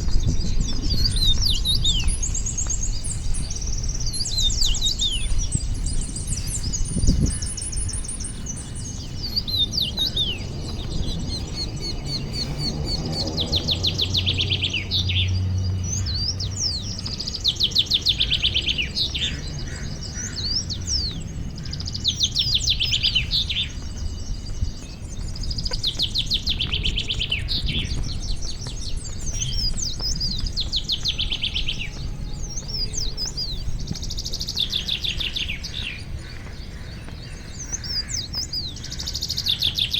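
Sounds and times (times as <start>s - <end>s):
low rumble: 0.0s - 17.1s
songbirds singing and chirping: 0.0s - 39.9s.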